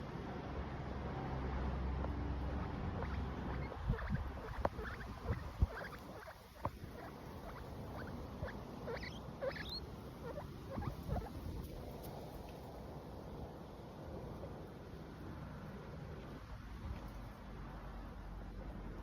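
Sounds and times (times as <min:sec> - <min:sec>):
guinea pigs squeaking: 0:02.5 - 0:12.3.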